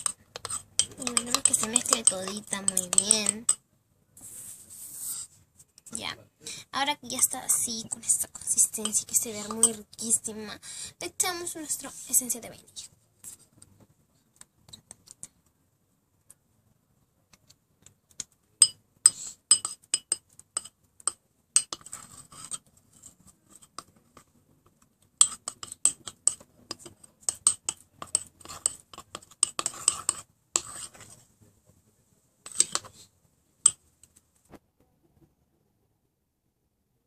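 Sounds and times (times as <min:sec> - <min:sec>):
metal utensil beating batter in bowl: 0:00.0 - 0:03.6, 0:08.1 - 0:10.2, 0:18.6 - 0:24.3, 0:25.1 - 0:31.2, 0:32.4 - 0:33.0.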